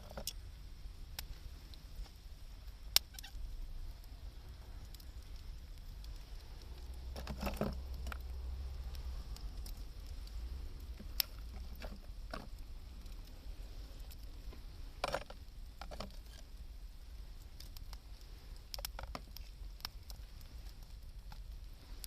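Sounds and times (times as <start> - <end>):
campfire crackling: 0.0 - 22.0
low rumble: 3.5 - 15.0.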